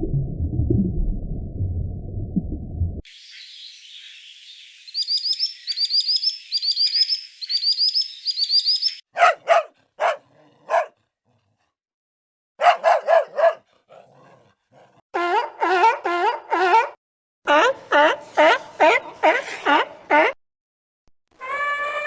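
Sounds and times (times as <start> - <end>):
low rumble: 0.0 - 3.0
birds chirping: 3.1 - 9.1
dog barking: 9.1 - 11.0, 12.6 - 20.3.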